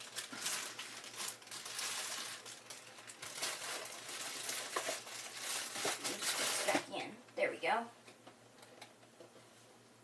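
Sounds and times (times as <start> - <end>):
plastic bag crinkling: 0.0 - 6.9.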